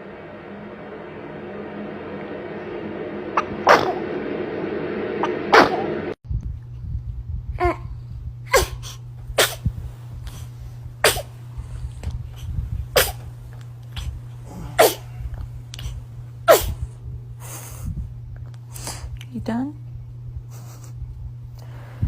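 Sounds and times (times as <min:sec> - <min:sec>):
steady low hum: 0:00.0 - 0:22.0
baby sneezing: 0:08.5 - 0:09.7, 0:11.0 - 0:11.3, 0:13.0 - 0:13.2, 0:14.8 - 0:15.1, 0:16.5 - 0:16.8.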